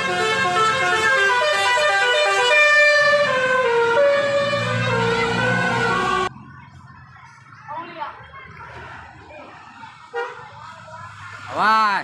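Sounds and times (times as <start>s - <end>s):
musical bus horn playing tune: 0.0s - 6.3s.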